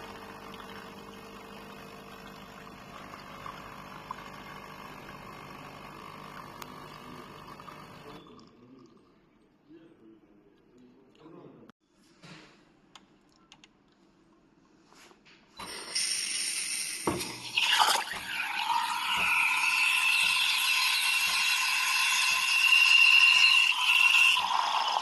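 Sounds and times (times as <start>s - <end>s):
espresso machine hissing and whining: 0.0s - 8.2s, 15.6s - 25.0s.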